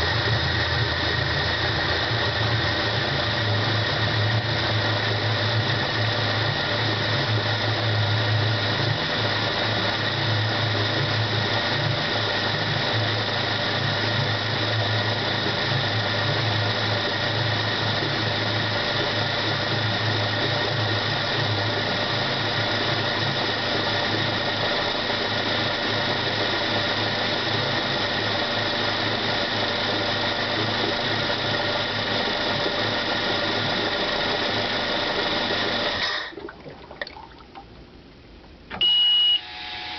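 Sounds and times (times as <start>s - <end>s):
high-pitched whine: 0.0s - 36.2s, 38.7s - 39.9s
outboard engine running: 0.0s - 39.9s.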